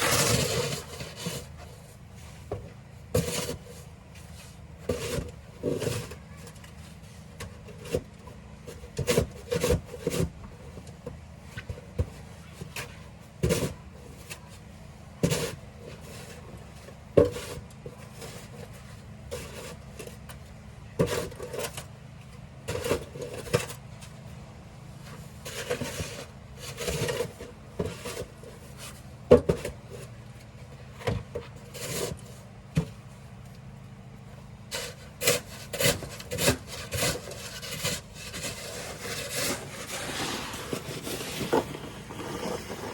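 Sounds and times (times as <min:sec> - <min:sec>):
snow shovel scraping pavement: 0:00.0 - 0:02.0, 0:03.2 - 0:06.2, 0:34.7 - 0:42.9.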